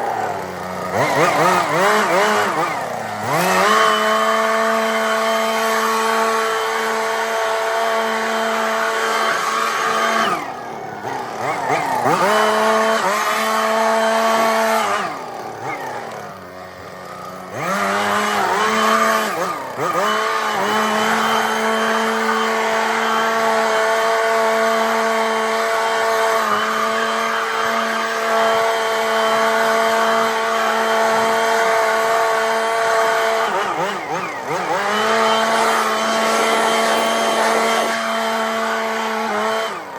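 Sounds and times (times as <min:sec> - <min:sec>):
small engine revving: 0:00.0 - 0:39.9.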